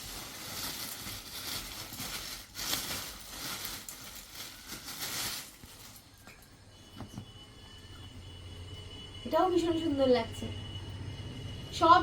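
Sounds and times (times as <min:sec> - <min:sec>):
packaging crinkling and rustling: 0:00.0 - 0:06.5.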